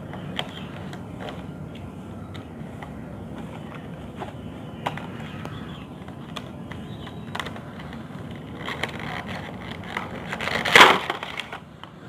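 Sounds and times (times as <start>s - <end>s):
cardboard and plastic crinkling: 3.4s - 11.6s.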